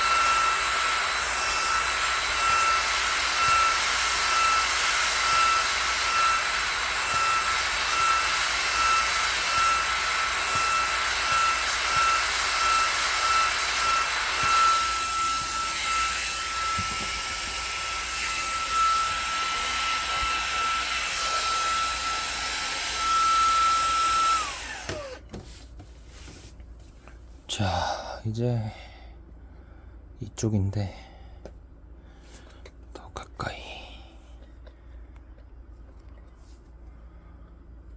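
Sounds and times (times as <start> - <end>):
vacuum motor spinning down: 0.0 - 25.2
cordless vacuum cleaner whine: 0.0 - 25.4.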